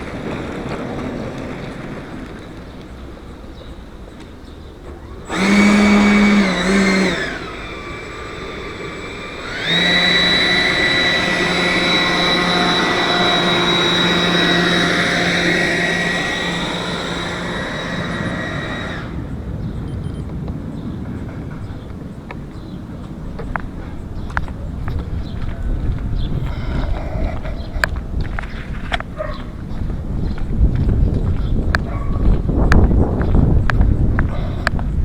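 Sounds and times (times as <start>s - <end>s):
model jet engine whine: 4.9s - 20.2s.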